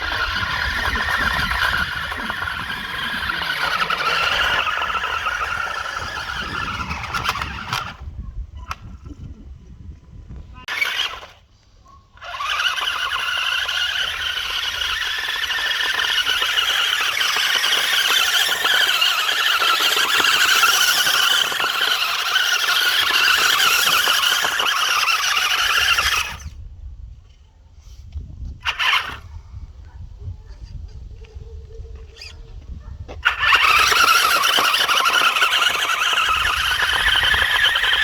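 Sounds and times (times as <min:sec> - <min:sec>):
electric motor whine: 0:00.0 - 0:08.1, 0:10.6 - 0:11.5, 0:12.2 - 0:26.6, 0:33.2 - 0:38.0.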